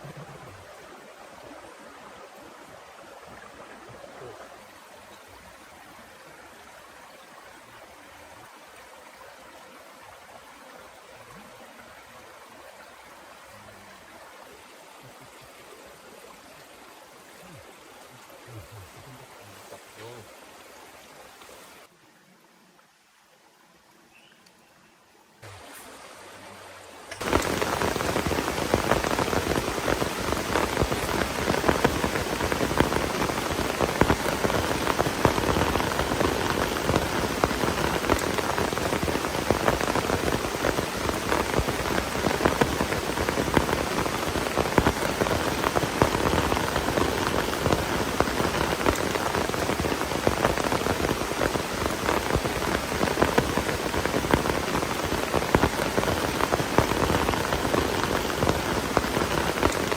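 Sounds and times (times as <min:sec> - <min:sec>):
heavy rain falling: 0:25.4 - 0:59.9.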